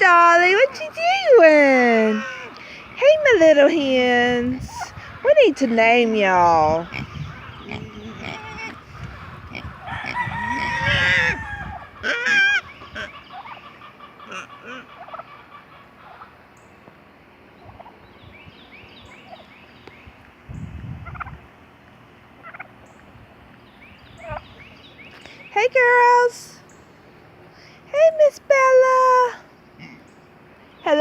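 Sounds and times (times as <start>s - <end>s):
chickens calling: 0.0s - 28.4s
turkey calling: 2.1s - 3.3s, 6.8s - 16.7s, 17.6s - 18.0s, 22.4s - 23.1s, 23.9s - 25.3s.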